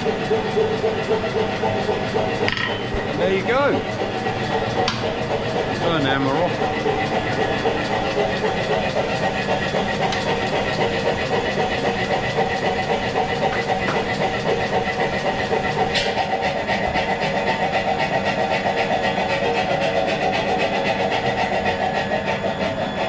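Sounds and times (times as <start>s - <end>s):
machine humming with fast pulse: 0.0s - 23.0s.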